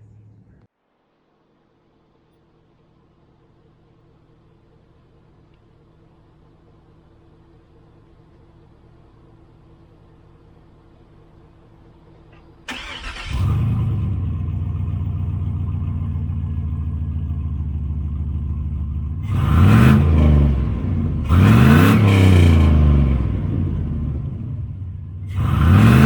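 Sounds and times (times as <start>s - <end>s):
truck engine starting and idling: 2.6s - 26.0s
engine revving: 12.7s - 26.0s.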